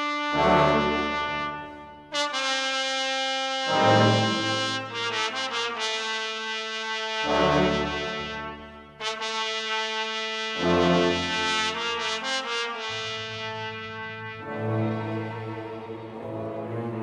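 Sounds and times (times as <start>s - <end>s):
sustained music chords: 13.4s - 17.0s.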